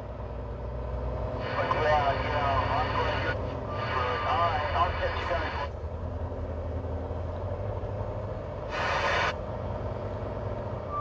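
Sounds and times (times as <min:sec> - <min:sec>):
truck engine rumbling: 0:00.0 - 0:11.0
short air hiss: 0:08.7 - 0:09.3.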